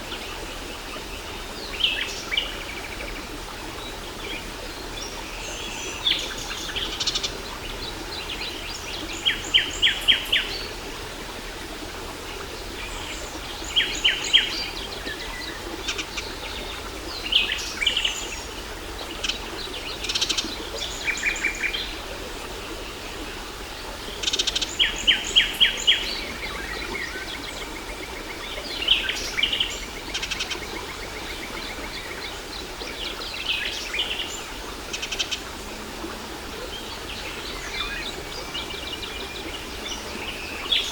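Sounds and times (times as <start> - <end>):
birds singing: 12.3 - 40.9.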